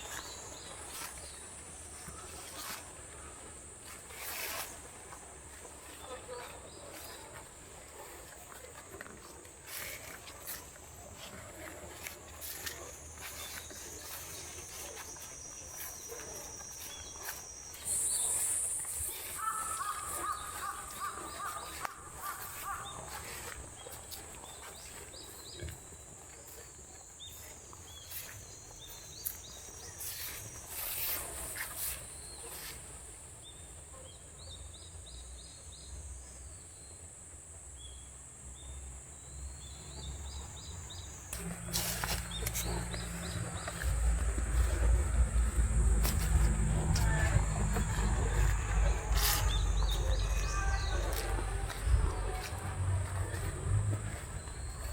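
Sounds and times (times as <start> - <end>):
bird calling: 12.4 - 24.5, 41.2 - 54.9
low rumble of wind: 41.0 - 54.9.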